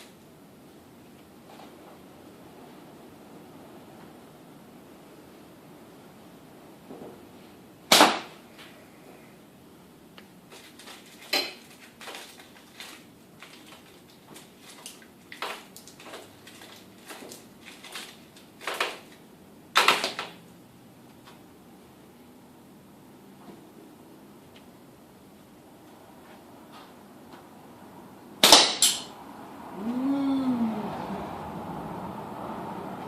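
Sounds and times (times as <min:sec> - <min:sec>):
slingshot snap and impact cracks: 0:07.9 - 0:08.4, 0:28.4 - 0:29.1.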